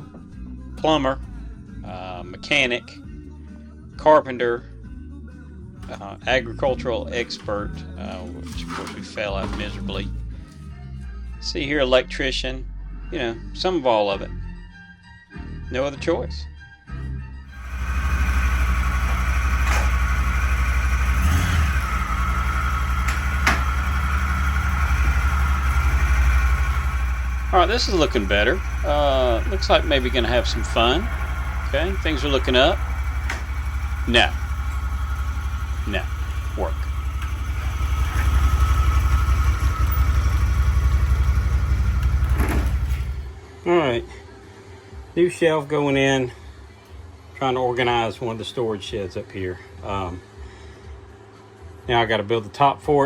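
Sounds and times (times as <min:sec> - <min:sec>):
engine running with pulsing hum: 0:17.5 - 0:43.6.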